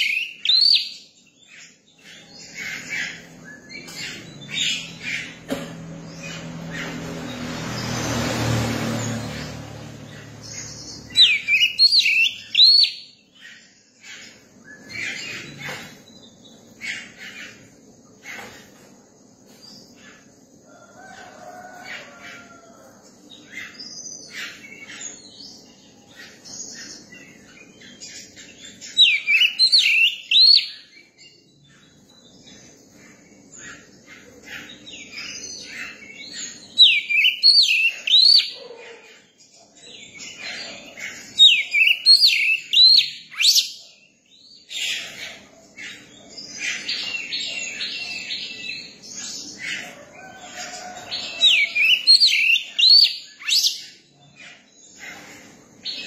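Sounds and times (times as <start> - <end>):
bird whistled song phrases: 41.4 - 43.7.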